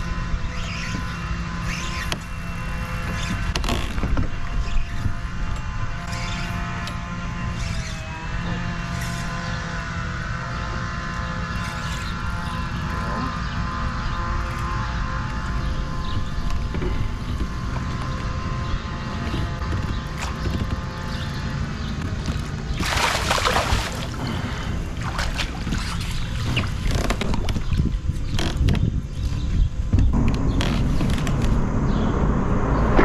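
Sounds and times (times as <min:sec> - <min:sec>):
wind and water rumble: 0:00.0 - 0:33.0
loud rush of noise: 0:30.1 - 0:33.0.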